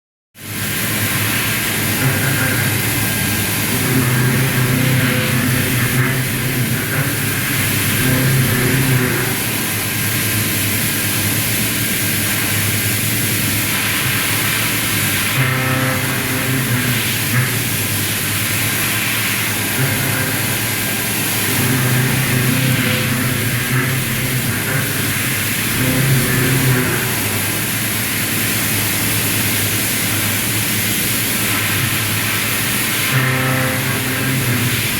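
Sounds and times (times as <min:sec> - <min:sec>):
milling cutter hissing: 0:00.9 - 0:10.8, 0:14.0 - 0:28.8
humming tone: 0:01.9 - 0:10.2, 0:15.3 - 0:18.0, 0:18.6 - 0:27.9, 0:33.0 - 0:34.9.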